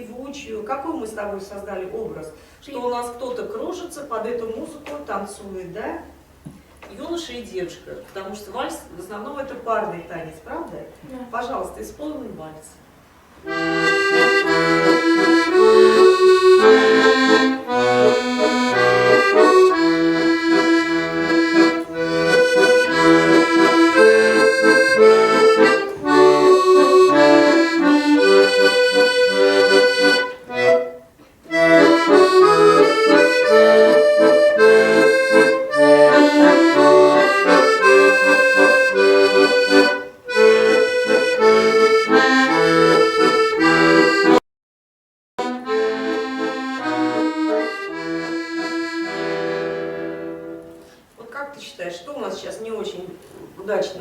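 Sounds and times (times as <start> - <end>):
accordion playing a waltz: 13.4 - 44.4, 45.4 - 51.0.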